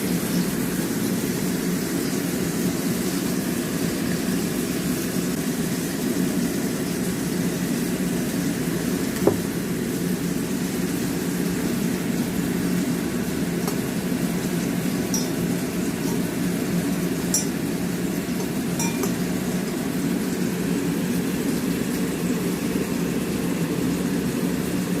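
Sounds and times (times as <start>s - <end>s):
steady low hum: 11.5s - 25.0s
spoon clinking against glass: 15.1s - 15.5s, 17.3s - 17.6s, 18.4s - 19.2s.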